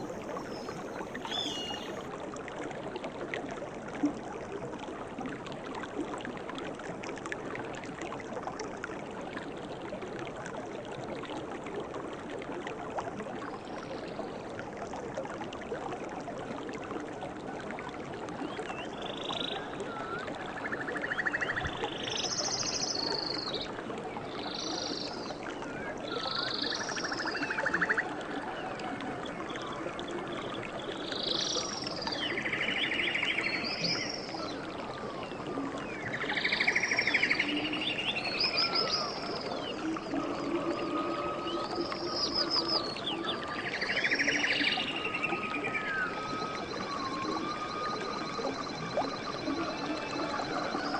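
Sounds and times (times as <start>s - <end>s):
birds calling with whistled notes: 0.0s - 2.0s, 36.0s - 50.9s
stream flowing: 0.0s - 50.9s.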